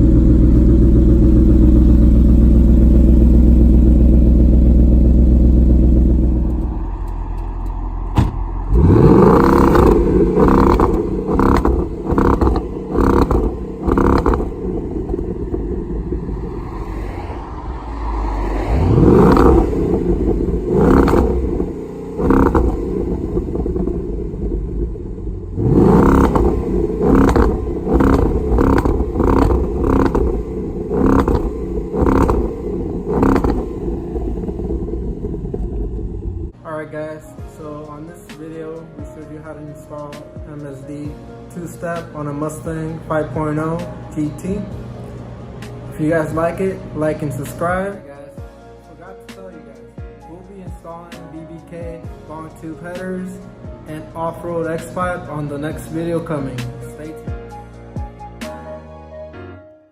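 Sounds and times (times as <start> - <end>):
rev limiter stuttering: 0.0 - 16.6, 18.7 - 36.6
car engine revving: 0.0 - 36.6.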